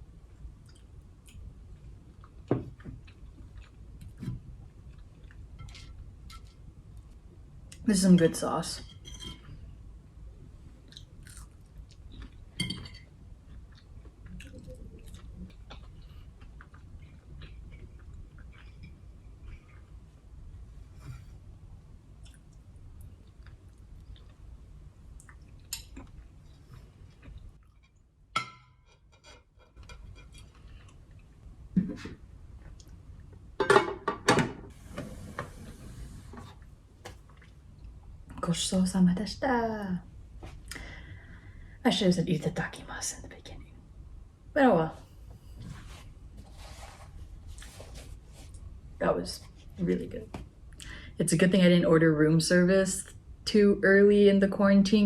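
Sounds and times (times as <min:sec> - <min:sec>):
person chewing food: 0:00.6 - 0:05.5, 0:10.8 - 0:20.0, 0:22.2 - 0:28.0
dishes clattering on a table: 0:33.6 - 0:35.1.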